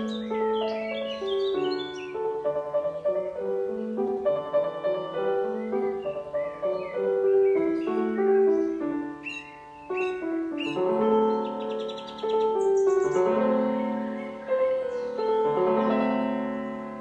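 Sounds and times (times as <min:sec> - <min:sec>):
short high bird calls: 0:00.0 - 0:02.2, 0:05.1 - 0:16.0
birdsong: 0:00.0 - 0:17.0
gentle piano music: 0:00.0 - 0:17.0.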